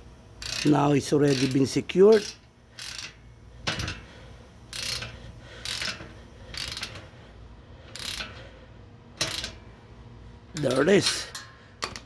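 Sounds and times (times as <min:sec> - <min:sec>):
ratchet wrench clicking: 0:00.4 - 0:04.1, 0:04.7 - 0:07.1, 0:07.8 - 0:08.5, 0:09.2 - 0:09.7, 0:10.6 - 0:12.0.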